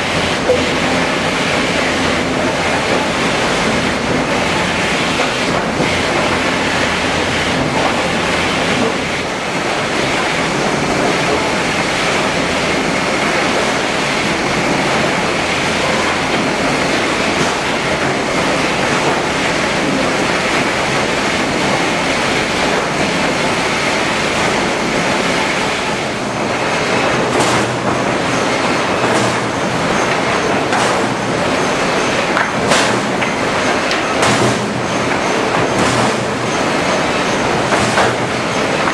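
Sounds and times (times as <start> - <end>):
sawmill machinery din with whine: 0.0 - 38.9
sharp knocks: 29.0 - 31.3, 32.4 - 36.4.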